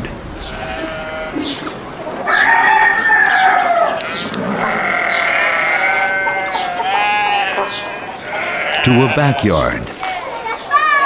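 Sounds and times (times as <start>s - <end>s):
farm animals bleating: 0.4s - 1.7s, 3.4s - 9.8s.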